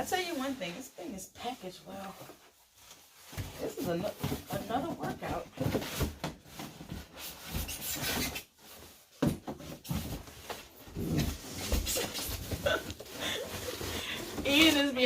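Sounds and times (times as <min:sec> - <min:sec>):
cardboard and foam rubbing: 0:03.0 - 0:15.0.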